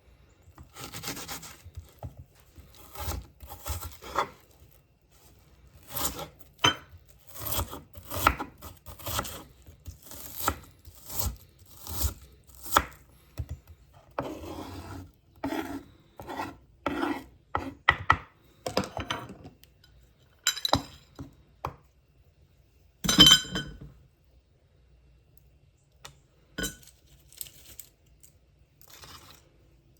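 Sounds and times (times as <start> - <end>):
cutting and scraping vegetables: 0.6 - 18.3, 26.6 - 29.7.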